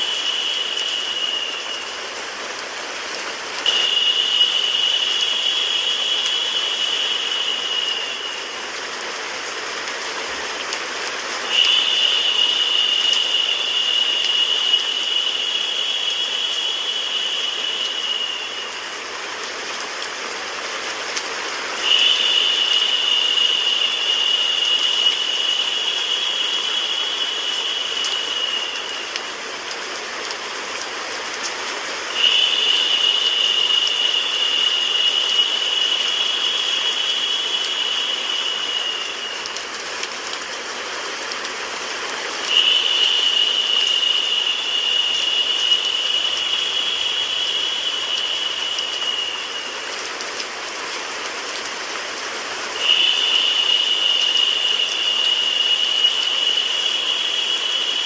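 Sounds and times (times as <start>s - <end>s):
rain: 0.0s - 58.0s
white noise hiss: 0.0s - 58.0s
steady high tone: 3.6s - 8.6s.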